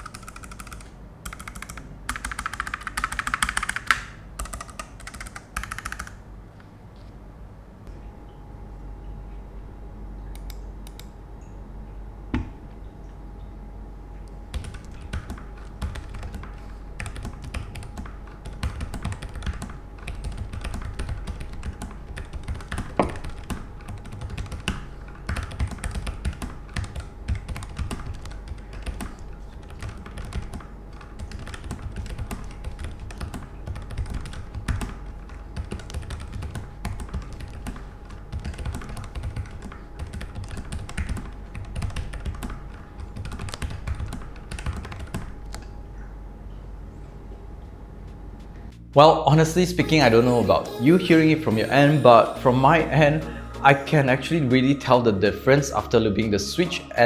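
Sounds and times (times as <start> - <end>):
mechanical keyboard typing: 0.0 - 6.2, 14.5 - 35.0, 35.6 - 45.3.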